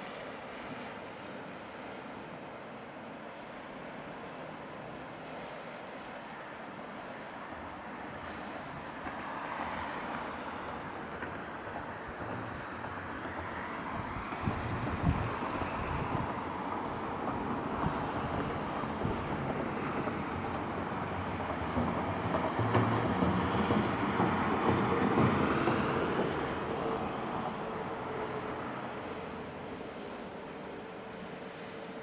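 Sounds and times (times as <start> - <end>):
wind buffeting microphone: 12.1 - 26.6.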